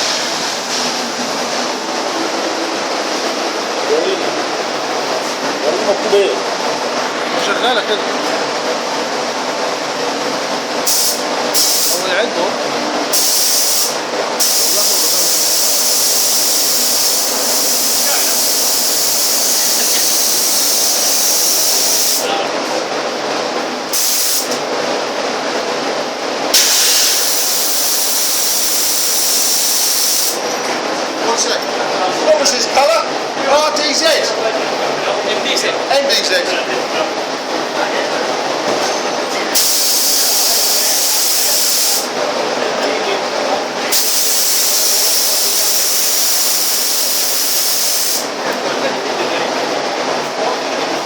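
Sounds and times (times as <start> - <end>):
spray gun hissing: 10.8 - 12.0, 13.1 - 22.3, 23.9 - 24.6, 26.6 - 30.4, 39.6 - 42.1, 43.9 - 48.3.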